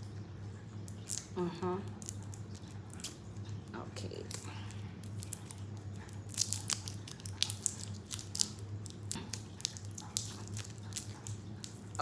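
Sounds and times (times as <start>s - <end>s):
low steady hum: 0.0s - 12.0s
plastic packaging crackling: 4.1s - 12.0s.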